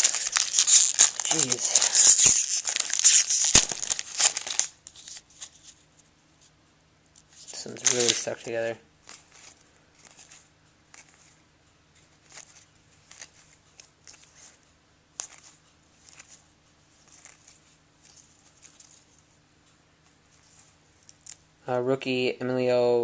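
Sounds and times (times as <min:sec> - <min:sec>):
cards rustling and flicking: 0:00.0 - 0:05.8, 0:07.2 - 0:11.4, 0:12.0 - 0:14.6, 0:15.2 - 0:16.4, 0:17.0 - 0:19.2.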